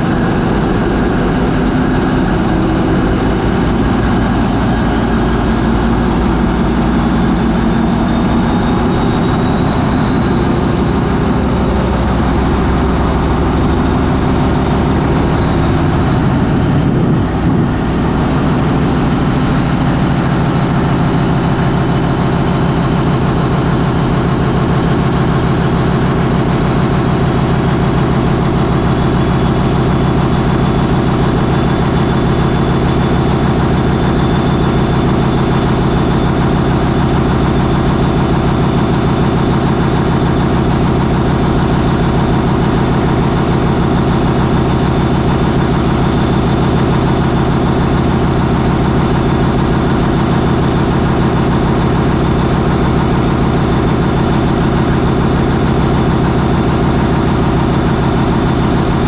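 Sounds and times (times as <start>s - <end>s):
large diesel engine running: 0.0s - 59.0s.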